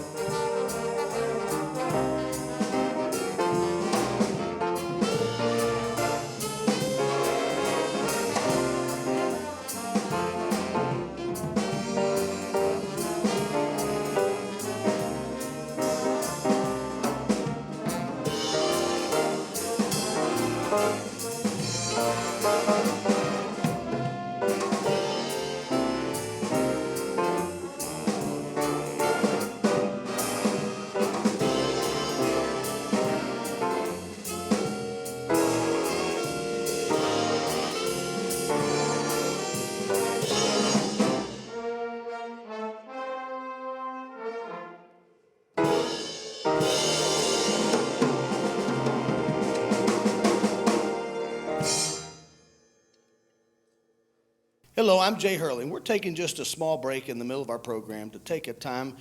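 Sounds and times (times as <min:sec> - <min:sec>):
jazz band playing swing: 0:00.0 - 0:42.4, 0:45.6 - 0:52.2.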